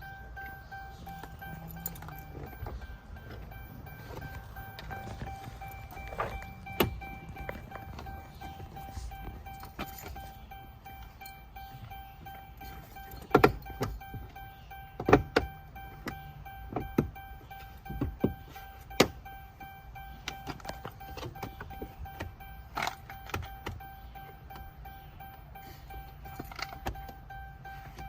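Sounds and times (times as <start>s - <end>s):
steady high-pitched hum: 0.0s - 20.9s.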